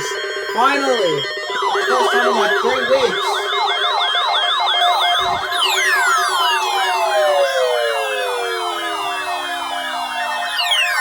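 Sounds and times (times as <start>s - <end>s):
steady alert tones: 0.0s - 7.4s
weather alert radio siren: 0.0s - 11.0s
downward gliding tones: 1.4s - 7.2s.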